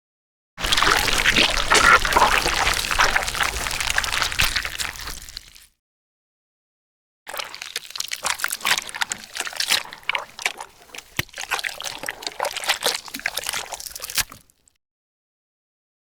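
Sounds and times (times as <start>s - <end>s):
wet squelching crackles and squishes: 0.6s - 5.8s, 7.3s - 14.8s.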